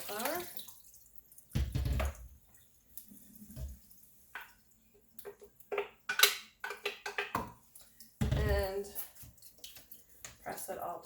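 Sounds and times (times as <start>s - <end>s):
blended food splashing through strainer: 0.0s - 4.0s.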